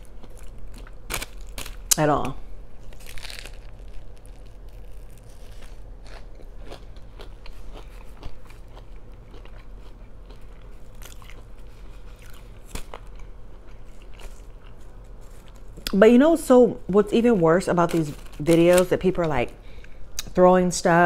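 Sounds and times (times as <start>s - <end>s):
person chewing crunchy food: 0.0s - 2.0s, 2.8s - 16.0s.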